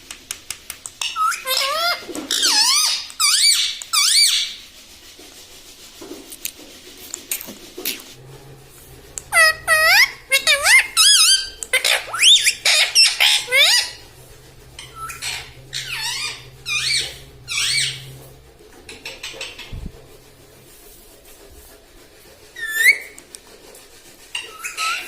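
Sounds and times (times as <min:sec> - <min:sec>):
parrot calling: 0:01.0 - 0:04.6, 0:09.0 - 0:20.7, 0:22.5 - 0:23.3, 0:24.3 - 0:25.0.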